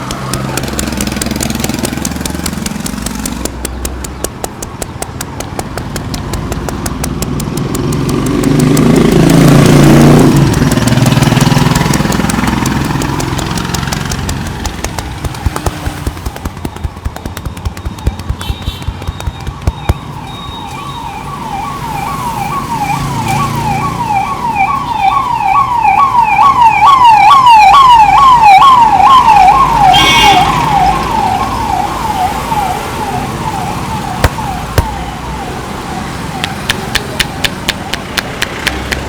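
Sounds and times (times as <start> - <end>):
emergency vehicle siren wailing: 15.2 - 38.0.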